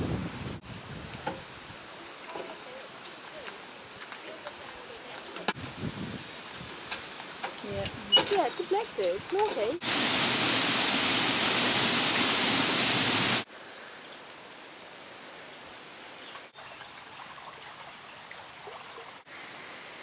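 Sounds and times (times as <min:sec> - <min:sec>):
flowing water rushing: 0:09.3 - 0:13.5, 0:16.4 - 0:20.0.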